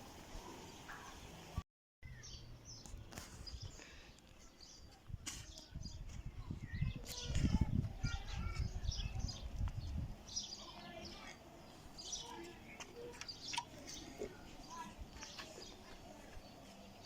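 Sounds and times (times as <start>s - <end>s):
small birds chirping: 0.3s - 17.0s.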